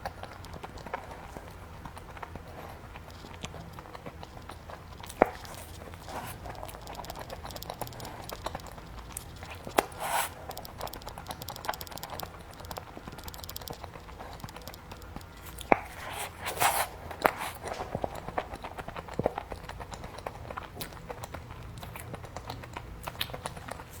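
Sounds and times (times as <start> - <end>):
sharp clicks: 0.0 - 16.4
crunchy smacking bursts: 0.0 - 24.0
person chewing and biting: 0.0 - 24.0.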